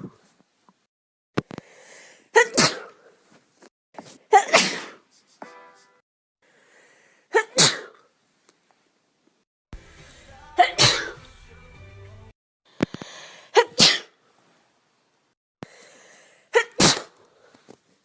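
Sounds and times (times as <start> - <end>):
person sneezing: 2.3 - 3.1, 4.1 - 5.2, 7.3 - 8.0, 10.6 - 11.2, 13.5 - 14.2, 16.5 - 17.2.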